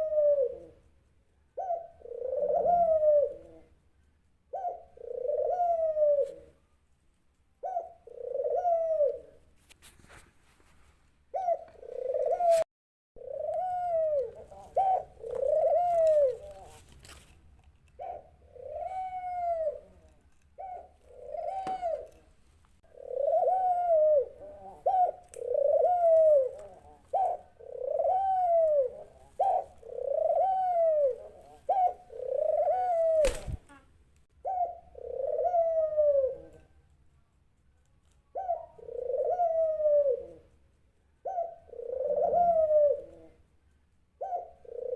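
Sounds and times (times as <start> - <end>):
dove cooing: 0.0 - 0.9, 1.6 - 3.8, 4.5 - 6.6, 7.6 - 9.5, 11.3 - 12.6, 13.2 - 17.0, 18.0 - 22.3, 22.9 - 36.8, 38.3 - 40.5, 41.2 - 43.5, 44.2 - 44.9.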